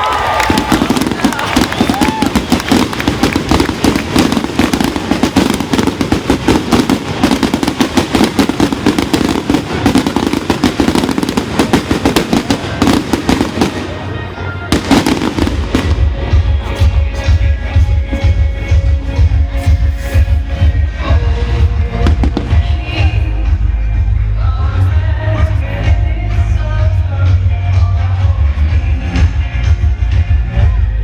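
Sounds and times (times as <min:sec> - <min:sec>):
fireworks bangs and crackles: 0:00.0 - 0:23.6
music with heavy bass beat: 0:14.7 - 0:31.0.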